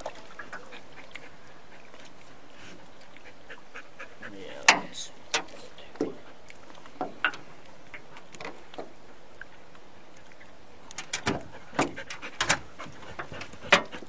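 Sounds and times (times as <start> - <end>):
knocks and clunks in boat: 4.6 - 6.2, 6.8 - 9.0, 10.9 - 14.0.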